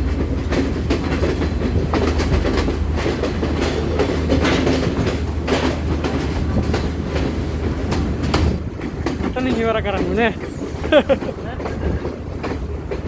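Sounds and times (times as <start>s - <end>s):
train rumbling: 0.0s - 13.0s
train wheels clacking on rails: 0.0s - 13.0s.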